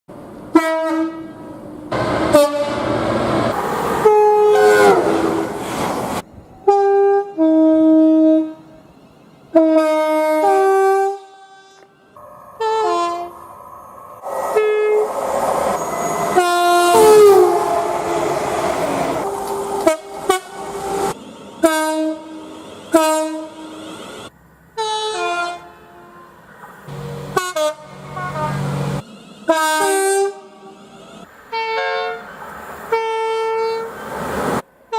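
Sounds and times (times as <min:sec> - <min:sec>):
trains passing: 0:00.1 - 0:34.9
train horn blasts: 0:00.5 - 0:01.6, 0:02.2 - 0:03.0, 0:04.0 - 0:05.6, 0:06.6 - 0:08.8, 0:09.5 - 0:13.5, 0:14.2 - 0:15.2, 0:15.8 - 0:24.1, 0:24.8 - 0:30.9, 0:31.5 - 0:32.3, 0:32.9 - 0:33.9.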